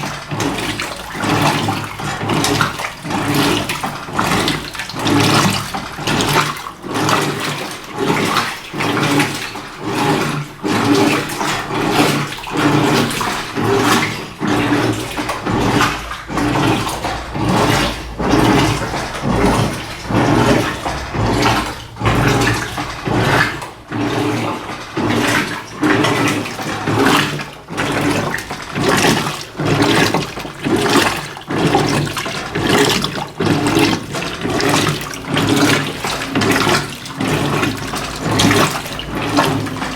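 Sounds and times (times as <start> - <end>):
water sloshing in washing machine: 0.0 - 39.9
steady low hum: 15.0 - 23.9.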